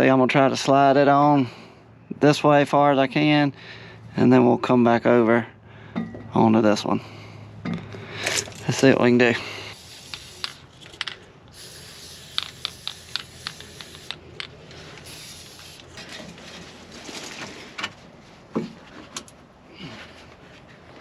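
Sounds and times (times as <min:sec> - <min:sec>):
hose clicks and scraping: 0:09.9 - 0:18.0.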